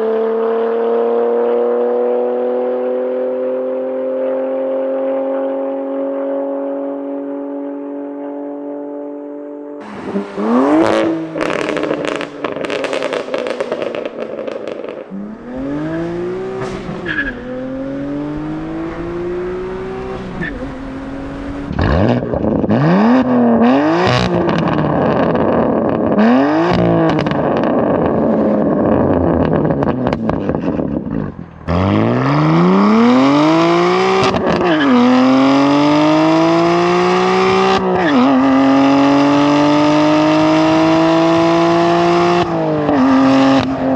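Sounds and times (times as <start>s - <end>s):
exhaust cracks: 9.8s - 22.2s
car engine accelerating hard: 9.8s - 43.9s.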